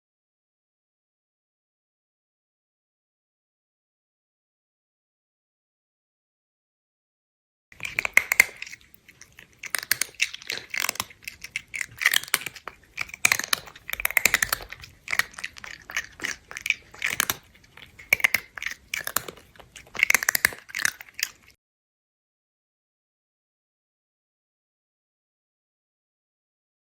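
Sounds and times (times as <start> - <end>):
cat crunchy chewing: 7.8 - 21.6.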